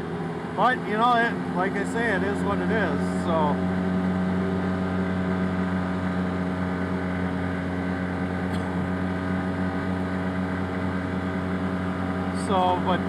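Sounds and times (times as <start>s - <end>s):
utility vehicle engine droning: 0.0s - 13.0s.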